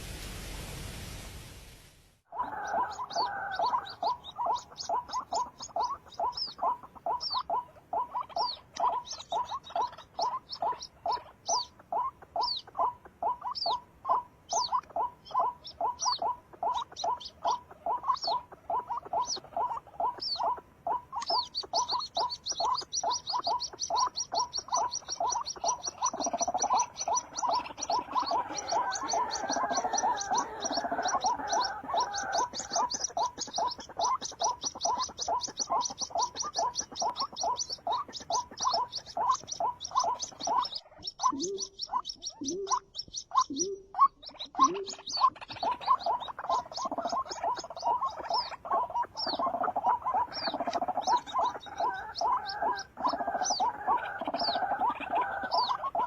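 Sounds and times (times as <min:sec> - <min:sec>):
thin high chirps: 0:21.2 - 0:51.7.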